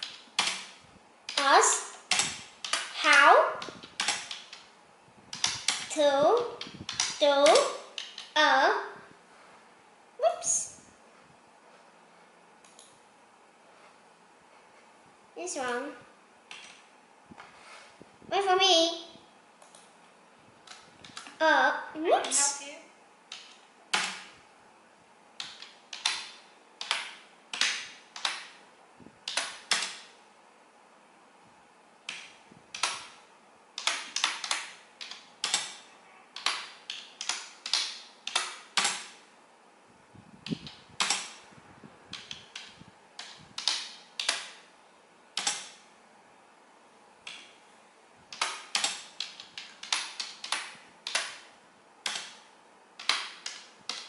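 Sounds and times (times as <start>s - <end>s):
computer keyboard typing: 0.0s - 4.7s, 5.3s - 8.4s, 23.3s - 24.3s, 25.4s - 28.6s, 29.2s - 30.2s, 33.8s - 39.2s, 40.6s - 41.4s, 42.1s - 44.6s, 45.4s - 45.8s, 48.3s - 54.0s.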